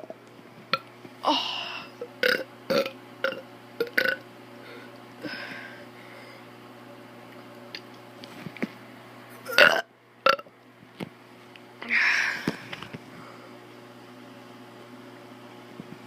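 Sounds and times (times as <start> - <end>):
child burping: 9.5 - 10.4.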